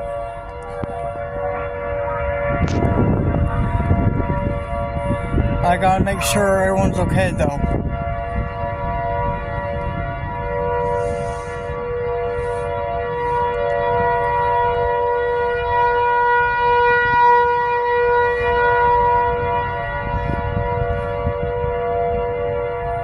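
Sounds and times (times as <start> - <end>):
warning siren wailing: 0.0 - 23.0
low rumble: 2.3 - 14.9.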